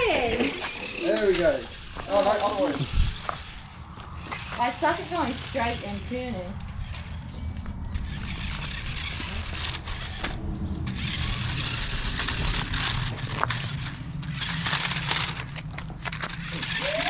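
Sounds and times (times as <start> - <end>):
steady low rumble: 0.0 - 16.8
toy car tyres scrabbling: 0.0 - 17.0.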